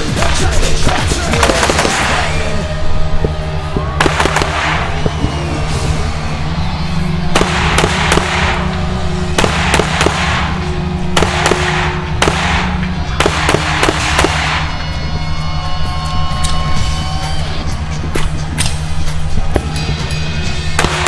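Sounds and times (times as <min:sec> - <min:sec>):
rifle shots echoing: 0:00.0 - 0:15.0, 0:20.8 - 0:21.0
background music: 0:00.0 - 0:21.0.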